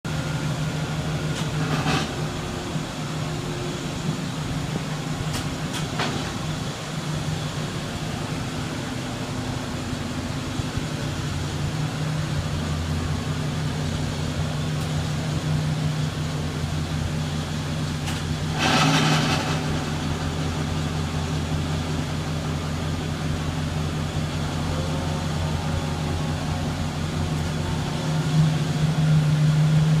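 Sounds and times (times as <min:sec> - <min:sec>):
car engine idling: 0:02.4 - 0:30.0
rushing burst: 0:18.3 - 0:22.3.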